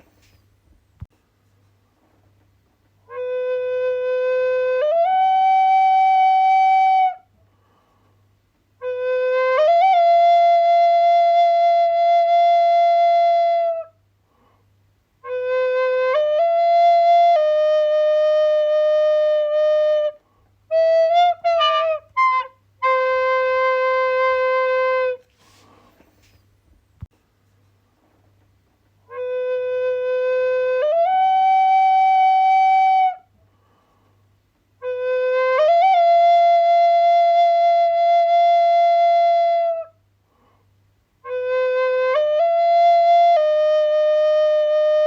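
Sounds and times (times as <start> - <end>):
solo flute playing: 3.0 - 7.3, 8.8 - 14.0, 15.2 - 25.8, 29.1 - 33.3, 34.8 - 40.0, 41.2 - 45.0.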